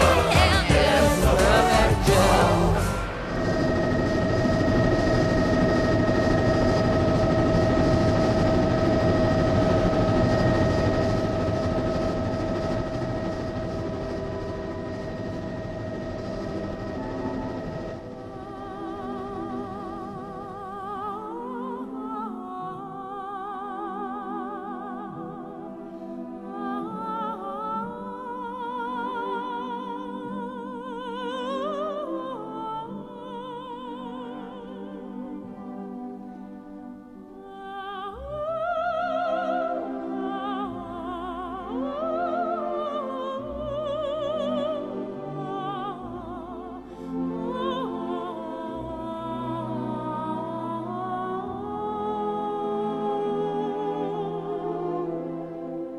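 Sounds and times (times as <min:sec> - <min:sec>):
operatic solo singing: 0:00.0 - 0:04.2
deep bass notes: 0:00.0 - 0:04.6
sustained accompaniment: 0:00.0 - 0:55.9.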